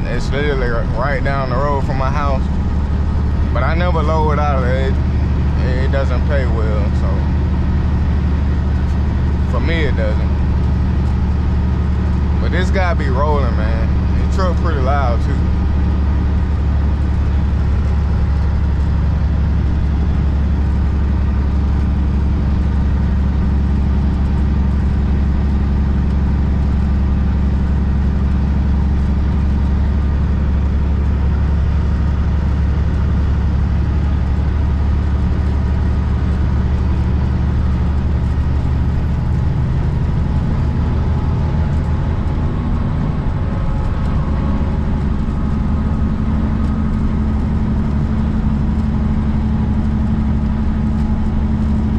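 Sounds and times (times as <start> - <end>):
heavy truck engine and road drone: 0.0 - 51.9.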